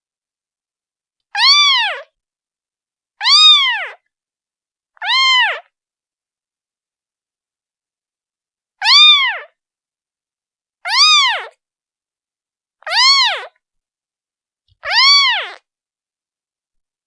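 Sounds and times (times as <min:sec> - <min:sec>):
kitten meowing: 0:01.3 - 0:02.1, 0:03.2 - 0:04.0, 0:05.0 - 0:05.7, 0:08.8 - 0:09.5, 0:10.9 - 0:11.5, 0:12.9 - 0:13.5, 0:14.8 - 0:15.6.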